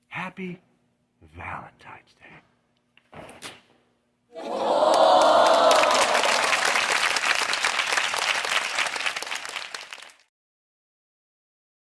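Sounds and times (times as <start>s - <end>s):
crowd cheering: 4.3s - 10.2s
crowd clapping: 4.4s - 10.3s.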